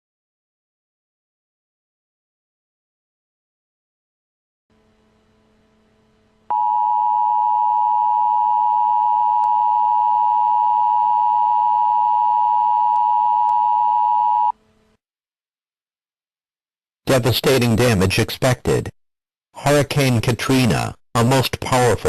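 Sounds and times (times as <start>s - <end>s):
two-tone alarm: 6.5s - 14.5s.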